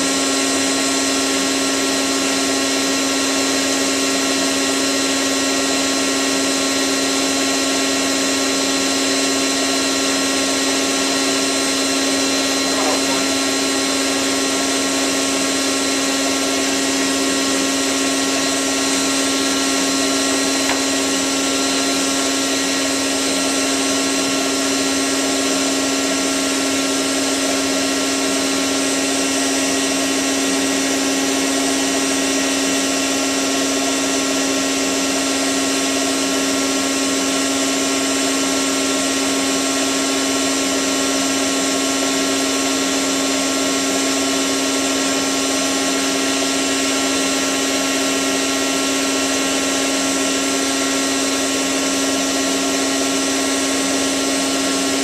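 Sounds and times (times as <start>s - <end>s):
washing machine motor whine: 0.0s - 55.0s
washing machine drum rushing: 18.7s - 22.1s.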